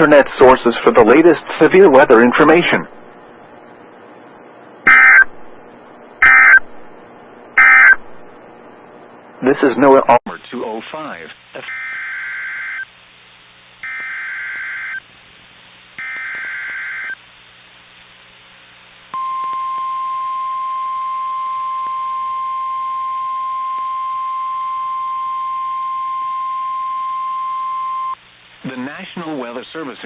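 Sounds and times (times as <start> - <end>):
warbling buzzy data bursts: 4.8 - 8.4, 16.0 - 17.2
steady warning alarm tone: 4.9 - 5.4, 6.2 - 6.7, 7.6 - 8.0, 11.7 - 12.9, 13.8 - 15.0, 16.0 - 17.2.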